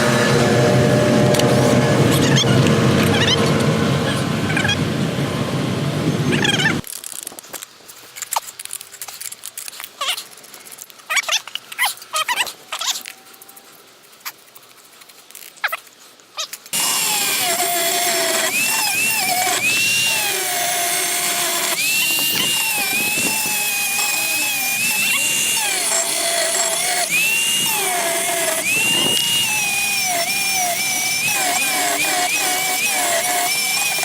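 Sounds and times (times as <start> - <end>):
power drill motor whine: 0.0 - 6.8, 16.8 - 34.0.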